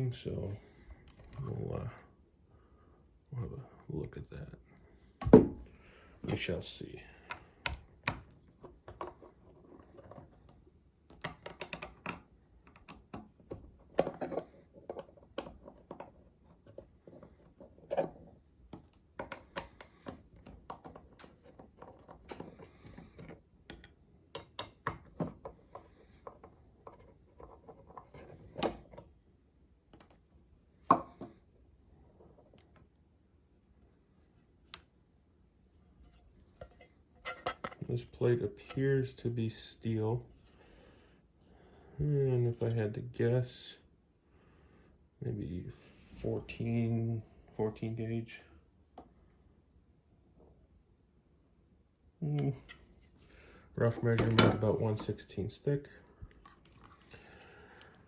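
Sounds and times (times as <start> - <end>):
small clicks and taps of metal parts: 10.0 - 17.2.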